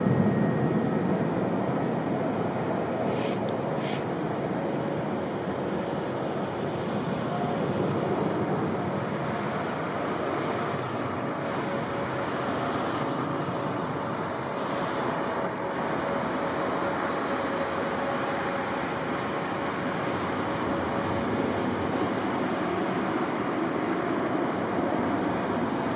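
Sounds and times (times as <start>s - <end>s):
faint steady whine: 0.0s - 25.9s
jet engines roaring: 0.0s - 25.9s
short hisses: 3.0s - 4.0s.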